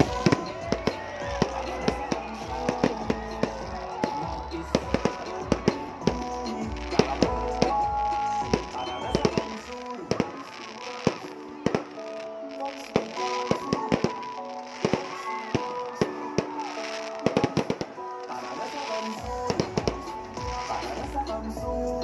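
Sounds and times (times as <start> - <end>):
fireworks bangs and crackles: 0.0 - 21.9
music playing: 0.0 - 22.0.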